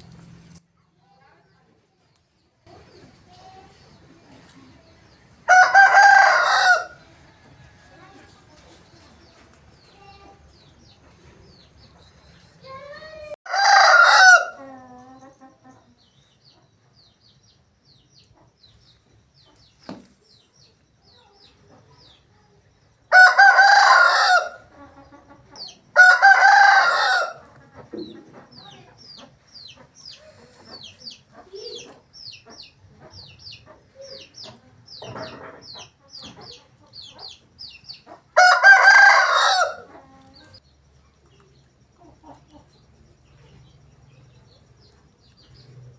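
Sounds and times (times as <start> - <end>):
roosters crowing: 5.4 - 8.3, 13.5 - 15.1, 23.1 - 24.9, 25.9 - 27.6, 38.2 - 40.6.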